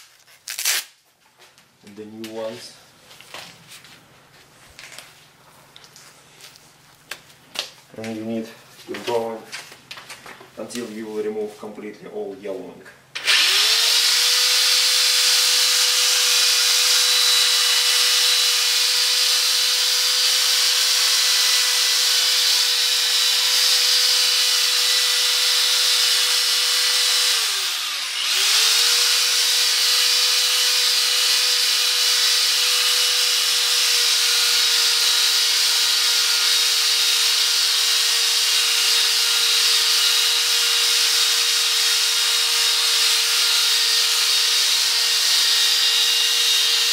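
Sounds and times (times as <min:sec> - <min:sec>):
power drill motor whine: 0:13.2 - 0:46.9.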